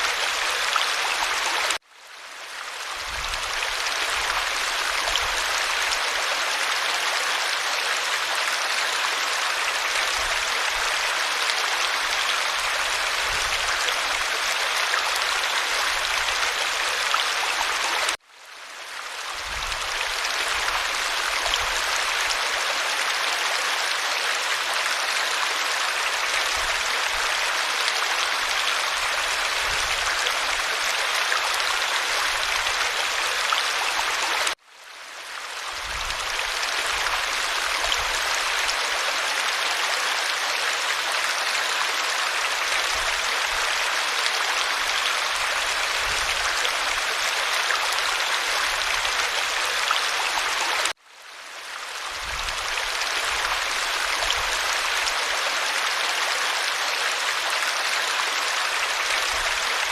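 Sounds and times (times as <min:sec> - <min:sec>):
creek water running over rocks: 0:00.0 - 0:59.9.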